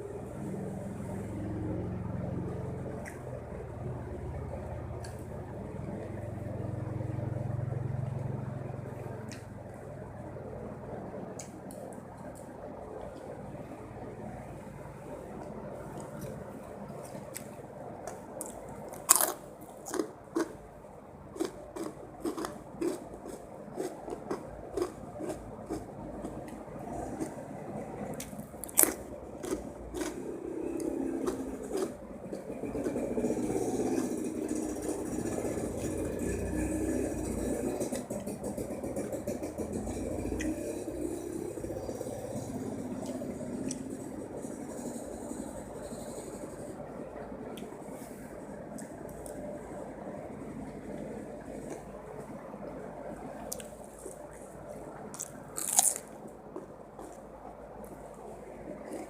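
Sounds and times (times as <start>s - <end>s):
crunchy chewing: 15.9s - 20.6s, 21.4s - 27.5s, 28.1s - 35.5s, 53.4s - 58.0s, 58.7s - 59.0s.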